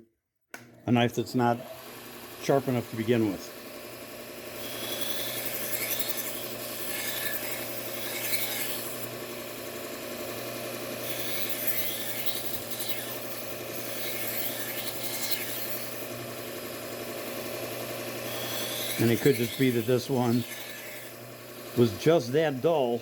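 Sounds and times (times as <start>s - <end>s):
belt grinder motor hum: 1.2s - 23.0s
knife grinding rasp: 4.4s - 9.5s, 10.2s - 23.0s.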